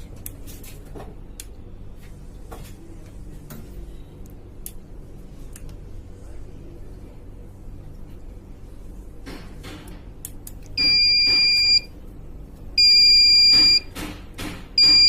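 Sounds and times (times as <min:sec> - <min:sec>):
high-pitched alarm beeps: 0:10.8 - 0:11.9, 0:12.8 - 0:13.9, 0:14.8 - 0:15.0.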